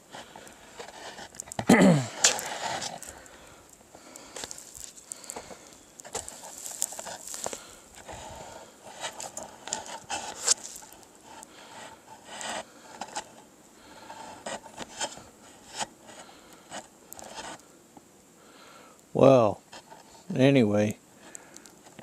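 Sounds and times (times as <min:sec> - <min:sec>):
camera handling scraping and rubbing: 0:00.2 - 0:03.2, 0:04.3 - 0:13.5, 0:14.1 - 0:17.6.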